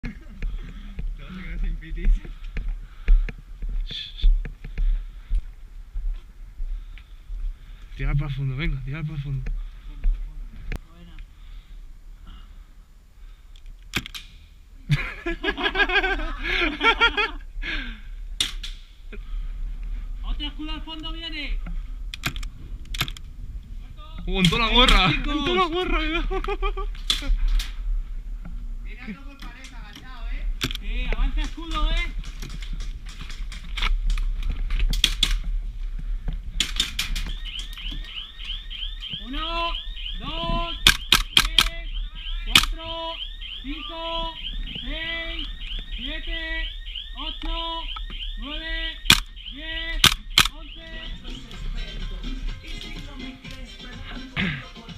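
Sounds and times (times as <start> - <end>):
airsoft gun shots: 40.8 - 41.8, 49.9 - 50.6
quick clicks: 40.8 - 41.8, 42.5 - 42.8, 49.1 - 50.6.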